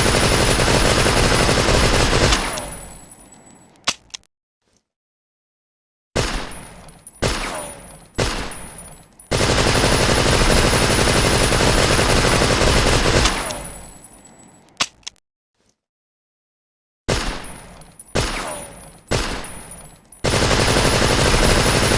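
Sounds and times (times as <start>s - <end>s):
submachine gun firing: 0.0s - 2.8s, 9.3s - 13.8s, 20.2s - 21.9s
sharp clicks: 14.7s - 15.2s.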